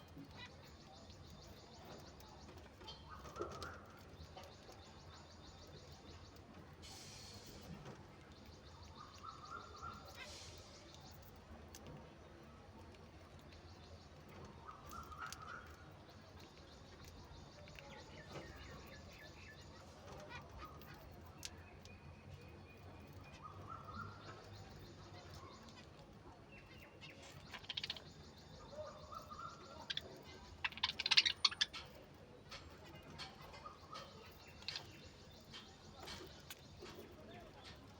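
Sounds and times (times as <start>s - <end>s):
budgerigars chirping: 8.4s - 11.1s, 14.4s - 21.0s, 23.2s - 25.8s, 26.6s - 37.0s.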